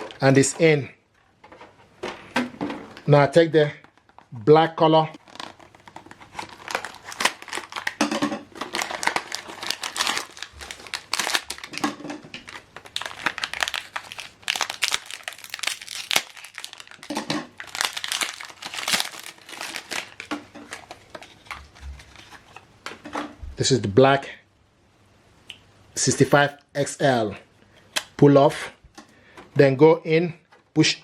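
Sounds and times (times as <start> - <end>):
packaging crinkling: 3.8 - 4.4, 5.2 - 22.6.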